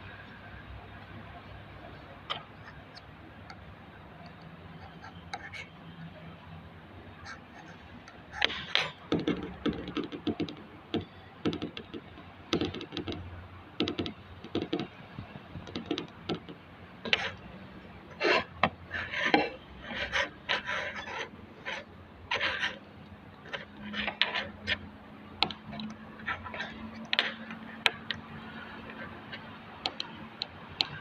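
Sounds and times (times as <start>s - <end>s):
scraping and light knocks: 18.2s - 31.0s.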